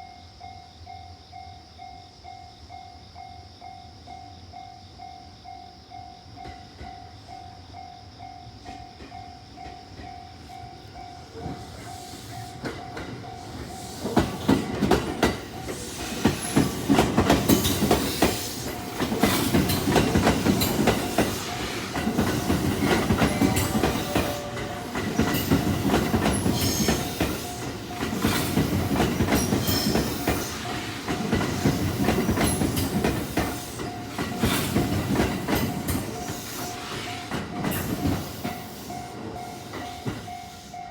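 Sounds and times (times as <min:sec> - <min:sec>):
train passing: 0:00.8 - 0:40.9
wheels clacking over rail joints: 0:08.6 - 0:40.7
level crossing warning bell: 0:19.0 - 0:30.9, 0:38.0 - 0:40.9.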